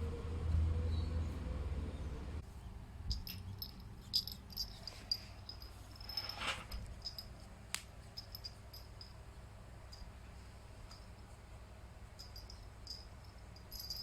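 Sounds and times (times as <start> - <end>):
brief rustle: 4.6 - 6.9.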